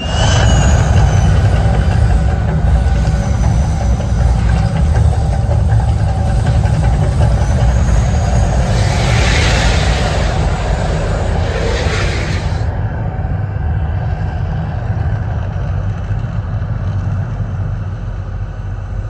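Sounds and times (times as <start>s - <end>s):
deep eruption rumble: 0.0s - 12.8s
rushing hiss: 0.0s - 12.8s.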